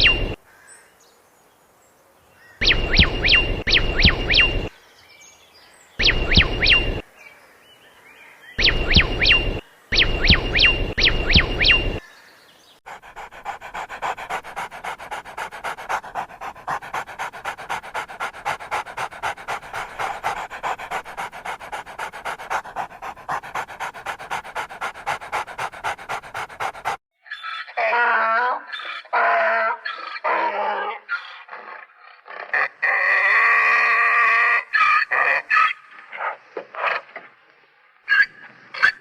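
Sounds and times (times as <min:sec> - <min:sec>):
dog panting rapidly: 0:00.0 - 0:00.4, 0:02.6 - 0:04.7, 0:06.0 - 0:07.0, 0:08.6 - 0:12.0, 0:12.9 - 0:27.0
sharp whistled chirps: 0:02.6 - 0:04.7, 0:06.0 - 0:07.0, 0:08.6 - 0:12.0.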